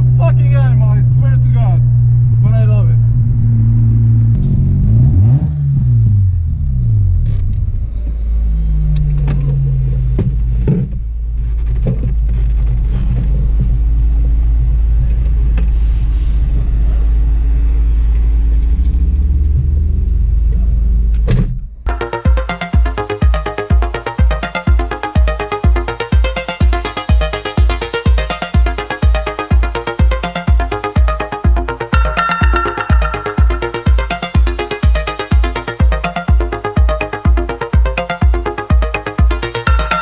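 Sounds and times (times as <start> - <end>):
rotary engine rumbling: 0.0 - 21.9
electronic music with a beat: 13.4 - 16.9, 21.9 - 40.0.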